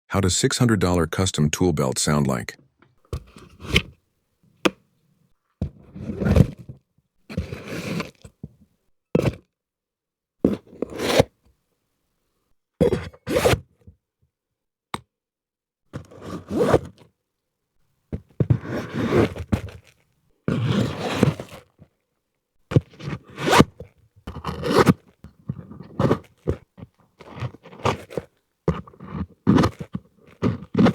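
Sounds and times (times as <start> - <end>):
tool belt scraping and rustling: 3.2 - 3.9, 7.3 - 8.2, 16.0 - 17.0, 18.4 - 21.7, 22.7 - 30.9.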